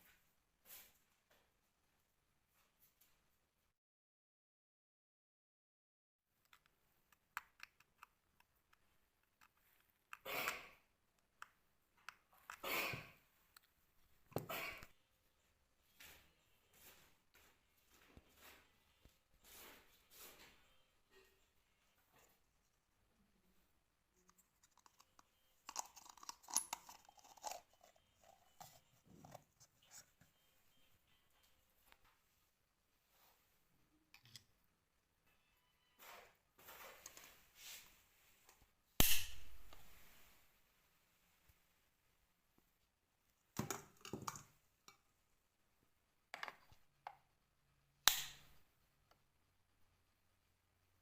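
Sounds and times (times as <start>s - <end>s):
small parts clicking and tapping: 6.4s - 10.3s, 24.2s - 29.5s.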